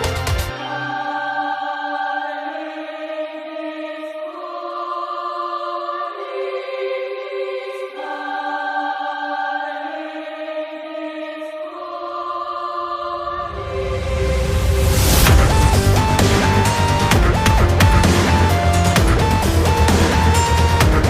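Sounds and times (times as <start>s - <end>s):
choir-like chords: 0.0s - 21.0s
low bass: 13.5s - 21.0s.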